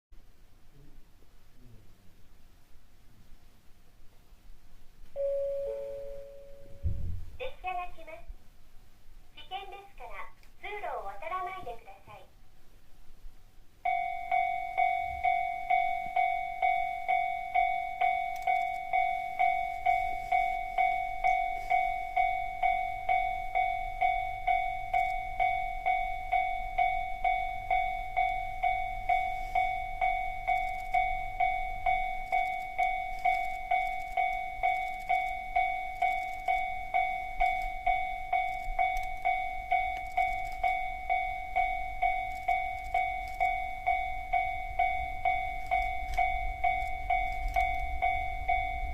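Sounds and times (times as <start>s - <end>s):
level-crossing warning bell ringing: 5.2s - 6.9s, 13.8s - 48.9s.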